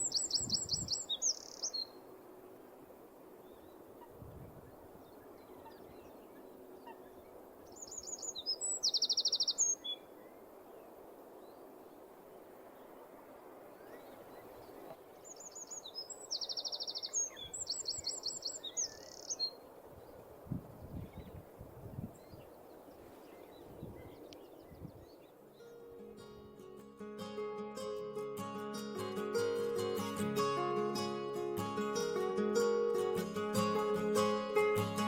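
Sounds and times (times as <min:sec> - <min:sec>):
wren singing high trills: 0:00.0 - 0:02.0, 0:07.7 - 0:10.1, 0:15.2 - 0:19.6.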